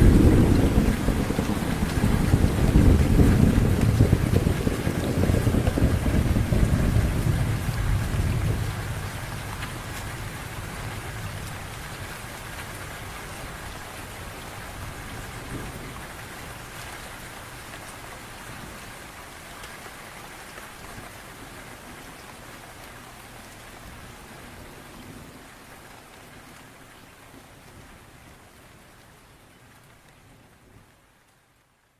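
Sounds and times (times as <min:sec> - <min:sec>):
low thunder rumble: 0:00.0 - 0:12.3
heavy rain pouring: 0:00.0 - 0:31.7.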